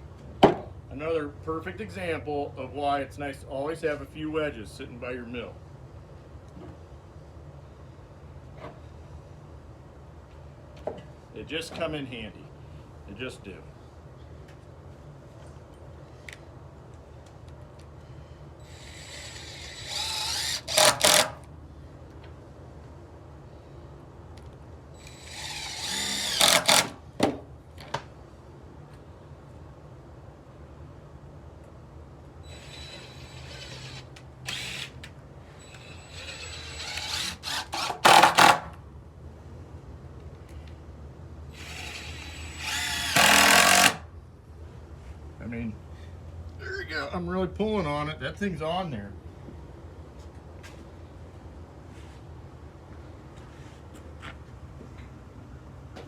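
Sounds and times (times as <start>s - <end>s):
steady low hum: 0.0s - 56.0s
power tool whirring: 18.6s - 21.4s, 25.0s - 27.0s, 32.4s - 35.0s, 35.6s - 38.7s, 41.5s - 44.0s.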